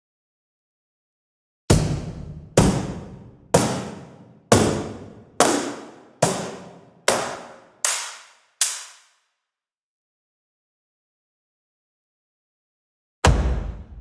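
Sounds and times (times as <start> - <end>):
cardboard box percussion hits: 1.7 - 9.1.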